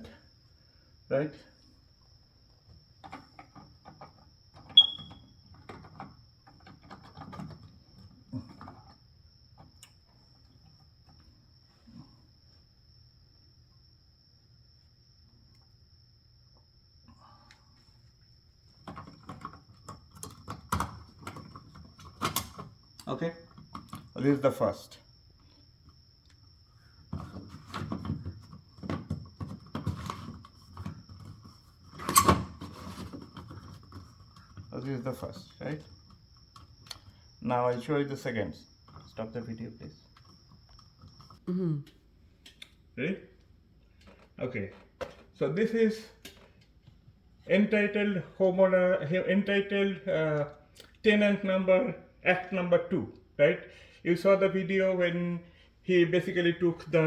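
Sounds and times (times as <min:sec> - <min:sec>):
smoke detector chirp: 0:04.8 - 0:05.3.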